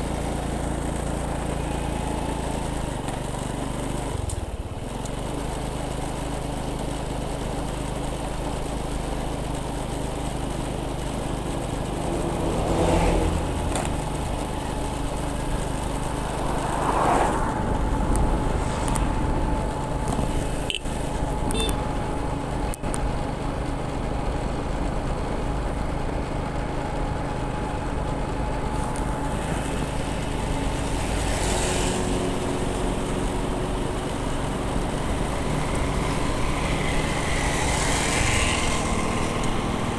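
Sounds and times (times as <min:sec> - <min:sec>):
motorcycle engine running: 0:00.0 - 0:39.9
road noise: 0:00.0 - 0:39.9
wind noise: 0:15.8 - 0:21.4.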